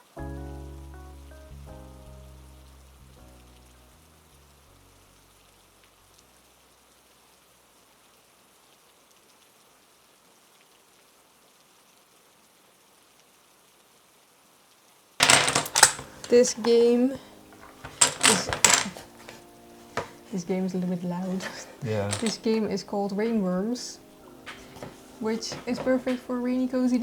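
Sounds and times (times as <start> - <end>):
background music: 0.0 - 4.9, 15.2 - 27.0
rain hiss: 2.3 - 15.2
dice rattling and rolling: 15.2 - 16.8, 17.6 - 19.4, 21.4 - 22.4.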